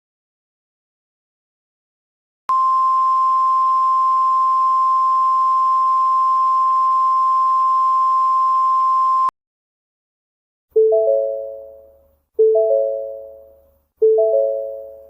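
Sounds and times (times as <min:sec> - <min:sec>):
high electronic alert tone: 0:10.8 - 0:15.0.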